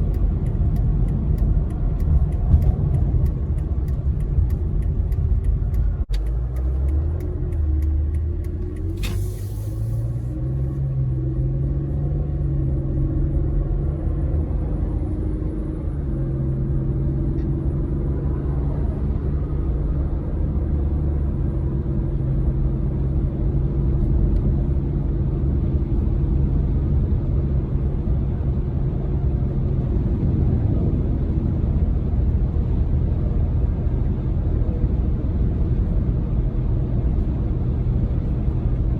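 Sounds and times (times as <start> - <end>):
car engine accelerating: 0.0 - 38.9
road rumble: 0.0 - 38.9
brief hiss: 8.9 - 10.3.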